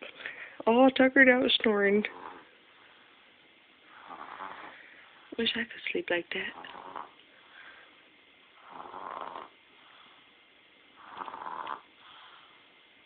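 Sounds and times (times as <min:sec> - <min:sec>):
quiet breath: 0:00.0 - 0:00.6, 0:02.1 - 0:05.4, 0:06.4 - 0:08.8, 0:09.6 - 0:13.0
baby snoring loudly: 0:03.9 - 0:04.8, 0:08.6 - 0:09.6, 0:11.0 - 0:12.0.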